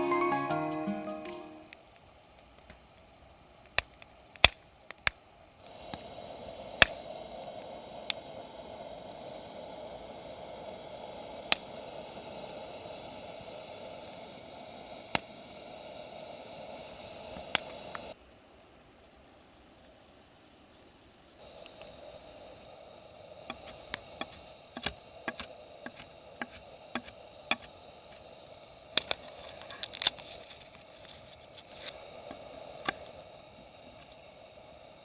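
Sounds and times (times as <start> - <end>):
fire hissing: 2.5 - 18.2, 21.4 - 35.0
campfire crackling and popping: 23.0 - 34.6.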